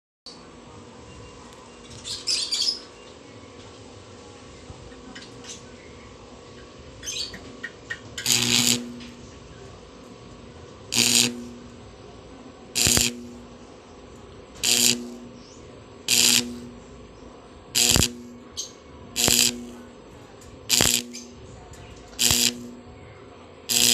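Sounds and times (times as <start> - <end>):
welding arc crackling: 7.3 - 12.0, 12.7 - 17.1, 17.7 - 23.0, 23.7 - 23.9
small clicks: 7.6 - 9.2, 10.9 - 11.6, 12.8 - 13.4, 17.8 - 18.4, 19.2 - 19.8, 20.4 - 22.8.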